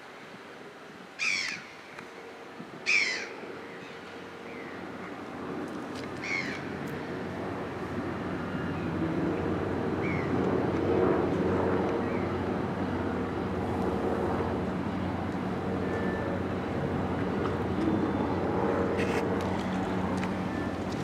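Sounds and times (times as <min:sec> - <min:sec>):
boat engine humming: 0:11.2 - 0:21.0.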